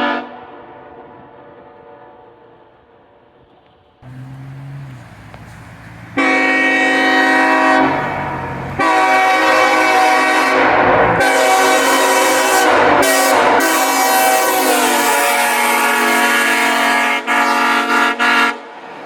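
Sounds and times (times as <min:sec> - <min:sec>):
locomotive air horn: 0:04.0 - 0:18.7.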